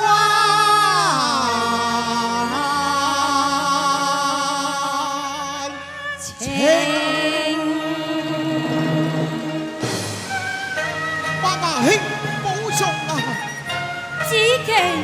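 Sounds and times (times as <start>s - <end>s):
opera singing: 0.0s - 10.1s
instrumental accompaniment: 0.0s - 15.0s.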